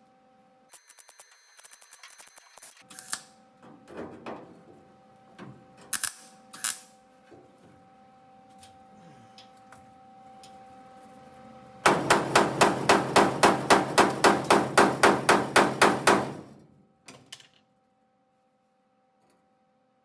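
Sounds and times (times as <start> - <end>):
hammer blows on sheet steel: 11.9 - 16.5.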